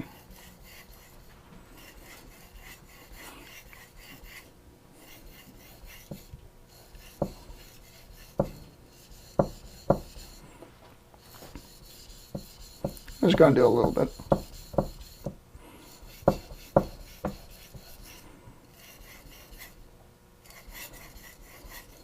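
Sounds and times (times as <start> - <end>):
knife rasping on whetstone: 0.0 - 10.5, 11.2 - 19.8, 20.4 - 22.0
sharp knocks: 9.4 - 10.1, 13.8 - 15.4.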